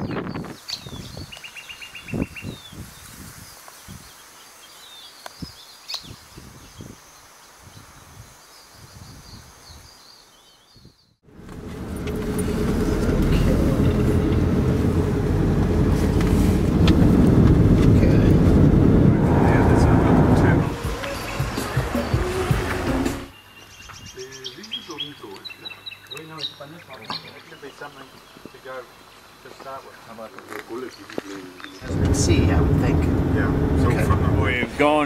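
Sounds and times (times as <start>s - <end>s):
small birds chirping: 0.0s - 11.2s, 23.3s - 31.9s
vehicle moving: 11.3s - 21.6s, 31.8s - 35.0s.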